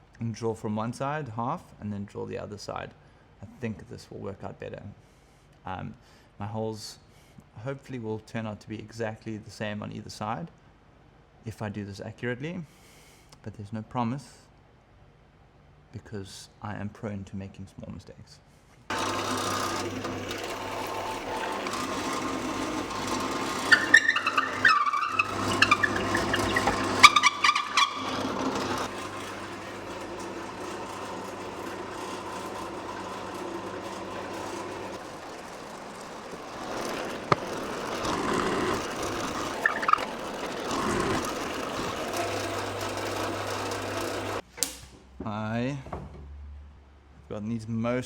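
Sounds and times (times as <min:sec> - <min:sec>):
electric drill boring wood: 0:18.9 - 0:44.4.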